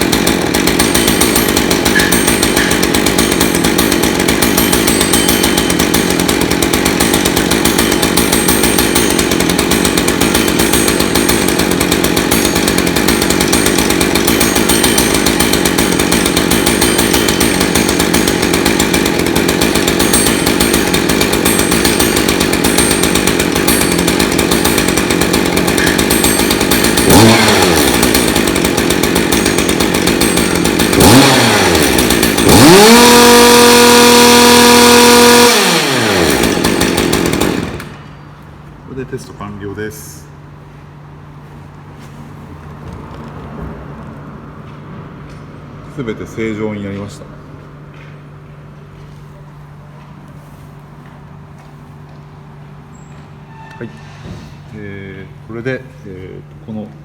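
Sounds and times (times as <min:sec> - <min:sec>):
chainsaw engine idling and revving: 0:00.0 - 0:38.1.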